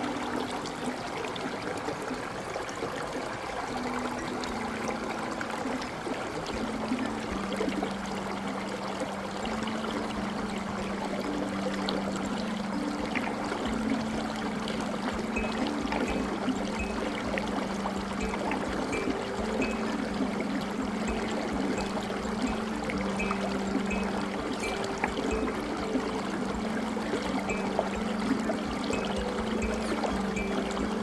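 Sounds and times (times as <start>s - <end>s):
waterfall rushing and splashing: 0.0s - 31.0s
low soft held notes: 9.9s - 31.0s.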